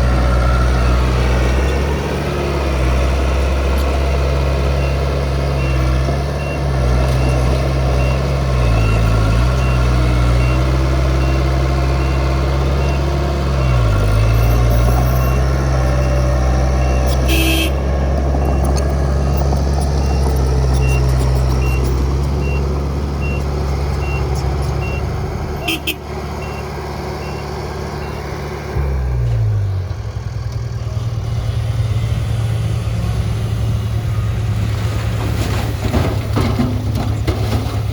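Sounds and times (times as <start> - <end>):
heavy diesel engine running: 0.0 - 37.9.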